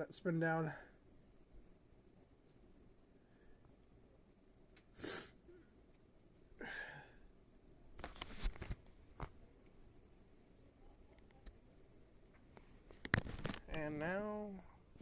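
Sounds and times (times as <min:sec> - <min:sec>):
person sniffing: 0:04.9 - 0:05.4.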